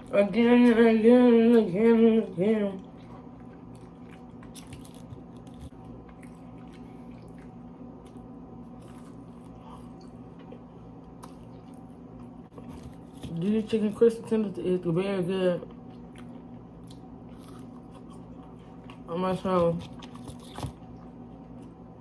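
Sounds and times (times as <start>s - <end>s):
steady low hum: 0.0s - 22.0s
chewing crispy fried chicken: 2.8s - 13.5s, 15.6s - 22.0s.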